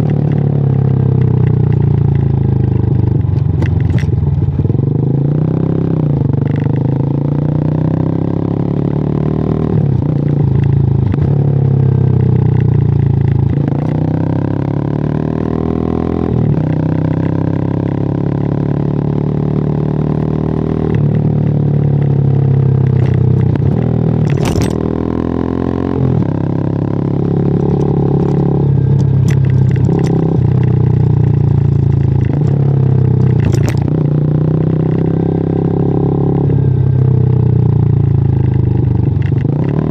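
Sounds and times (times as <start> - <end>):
motorcycle engine shifting gears: 0.0 - 39.9.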